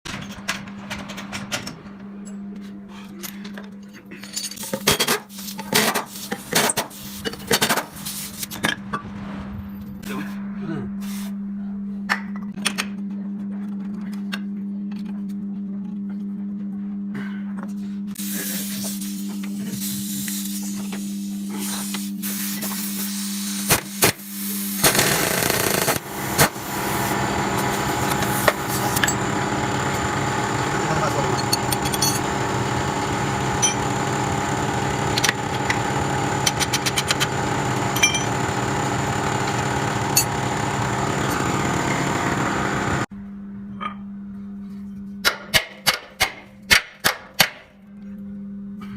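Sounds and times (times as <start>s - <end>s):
low machine hum: 24.9s - 45.3s.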